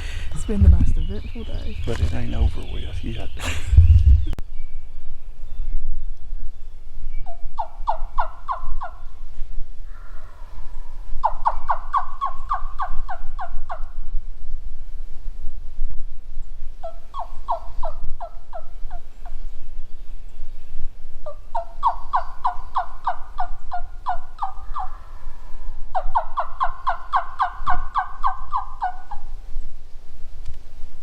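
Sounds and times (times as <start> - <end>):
turkey yelps: 7.3 - 9.1, 11.2 - 14.0, 16.8 - 19.0, 21.3 - 25.3, 25.9 - 29.3.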